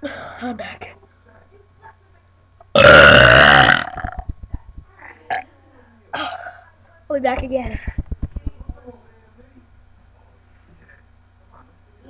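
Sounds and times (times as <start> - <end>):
person burping: 2.7 - 4.3.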